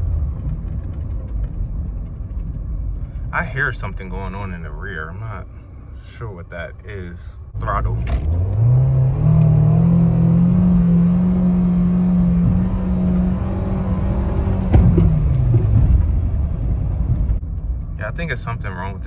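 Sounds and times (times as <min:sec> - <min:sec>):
car engine revving: 0:07.6 - 0:17.4
sharp knock: 0:13.3 - 0:16.1.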